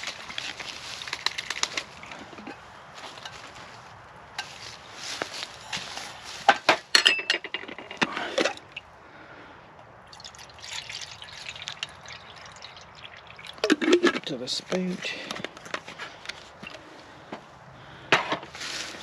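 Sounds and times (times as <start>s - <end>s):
water dripping: 8.6s - 8.9s, 10.1s - 13.9s
water sloshing in a kettle: 10.2s - 14.2s
kettle clinks: 13.4s - 14.3s.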